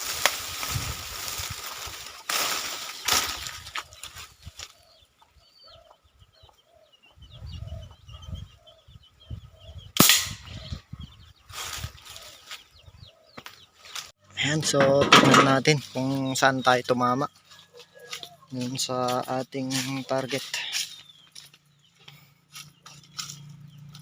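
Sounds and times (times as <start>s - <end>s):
toy gun shot crack: 10.0s - 10.5s.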